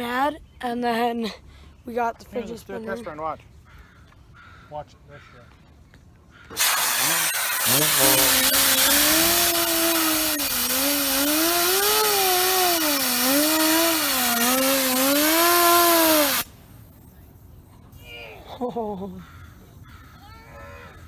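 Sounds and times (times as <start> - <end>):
compressed air hissing: 6.5 - 16.8
spinner humming whine: 6.6 - 16.5.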